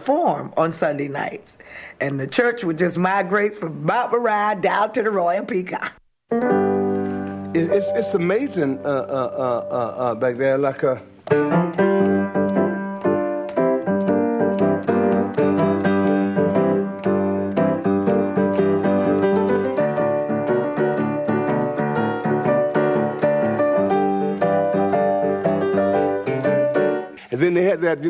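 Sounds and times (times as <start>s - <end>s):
piano chords and notes: 6.3s - 27.7s.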